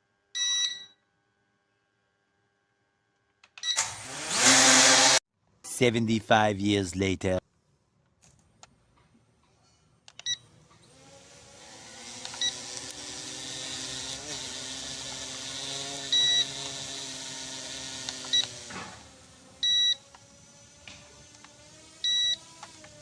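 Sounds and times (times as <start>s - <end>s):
drone motors whining: 3.8s - 5.2s, 10.4s - 23.0s.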